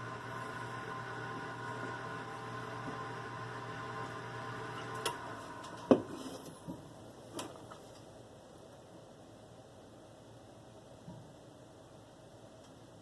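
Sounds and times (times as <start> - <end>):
oven fan hum and whine: 0.0 - 7.6.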